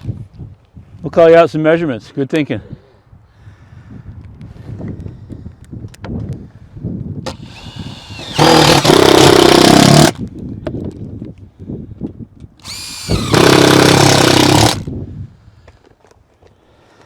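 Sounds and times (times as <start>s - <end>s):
power tool whining: 7.3s - 10.2s, 12.6s - 14.9s.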